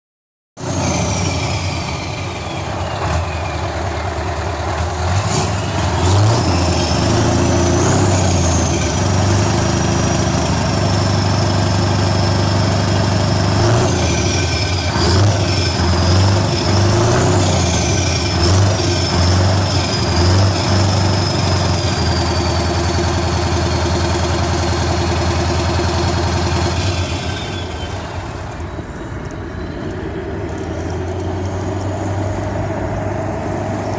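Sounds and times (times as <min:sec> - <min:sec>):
diesel truck engine revving: 0:00.6 - 0:33.9
high turbo whistle: 0:13.8 - 0:24.4, 0:25.8 - 0:30.2.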